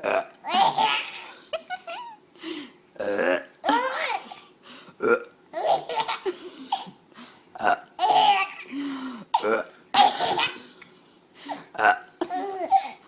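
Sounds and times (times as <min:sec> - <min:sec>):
baby laughing: 0:00.4 - 0:02.2, 0:05.6 - 0:06.4, 0:08.0 - 0:08.7, 0:12.2 - 0:13.0.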